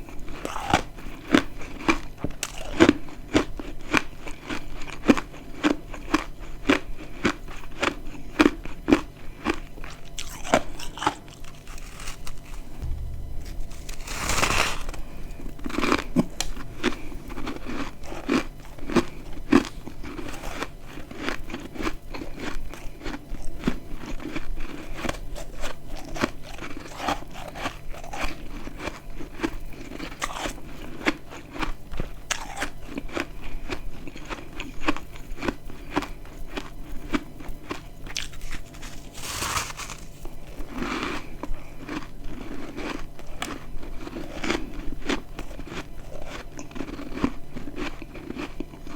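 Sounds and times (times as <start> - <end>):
crackly chewing crunch: 0.0 - 12.9, 13.8 - 48.9
frost crunching bite: 10.2 - 13.1, 13.7 - 23.2, 38.1 - 41.2.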